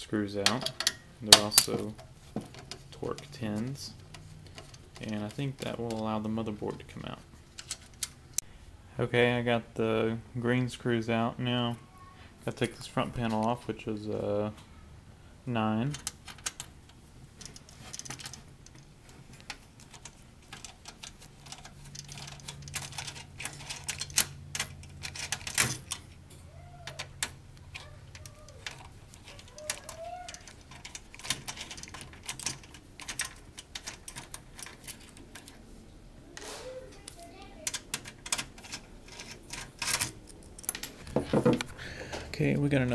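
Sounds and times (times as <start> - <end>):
plastic and metal parts handled: 0.4 - 8.2, 15.8 - 35.8, 37.0 - 42.4
screwdriver clicking on screws: 27.0 - 35.5.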